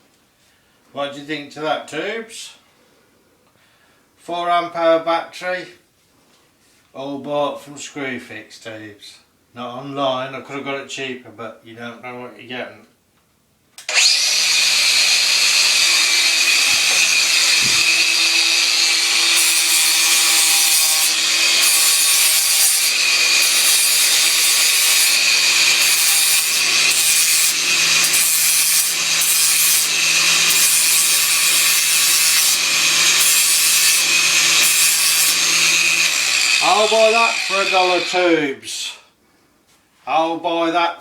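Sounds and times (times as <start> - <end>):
grinder motor humming: 13.9 - 38.1
grinding disc rasping on workpiece: 13.9 - 38.1.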